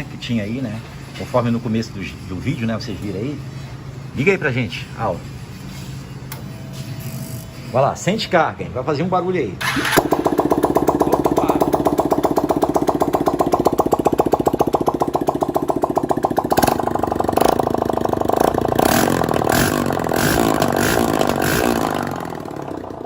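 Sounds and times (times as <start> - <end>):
motorcycle engine revving: 9.6 - 23.0.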